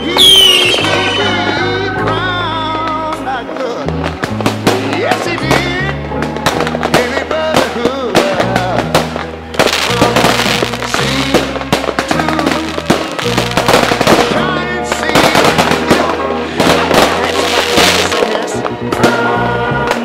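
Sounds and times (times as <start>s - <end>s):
fireworks bangs and crackles: 0.0s - 20.0s.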